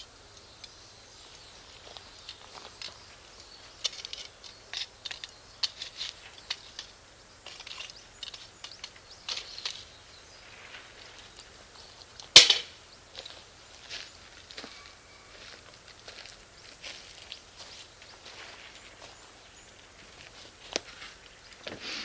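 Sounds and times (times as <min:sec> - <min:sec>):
charcoal fire crackling and popping: 0:12.1 - 0:12.8.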